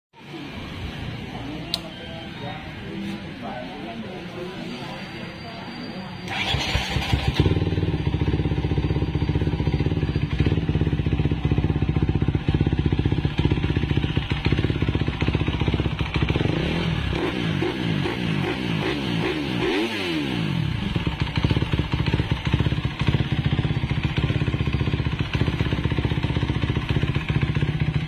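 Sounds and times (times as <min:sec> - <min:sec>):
motorcycle engine running loudly: 0:06.3 - 0:28.0.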